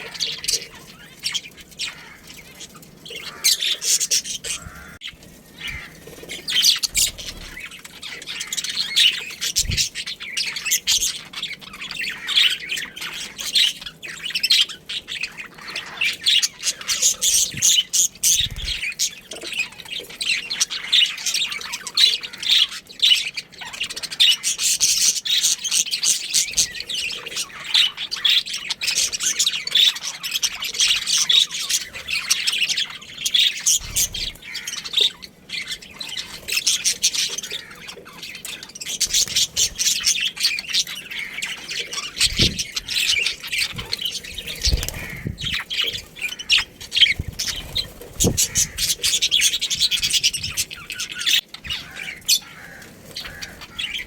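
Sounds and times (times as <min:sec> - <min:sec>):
small birds chirping and squawking: 0:00.0 - 0:54.0.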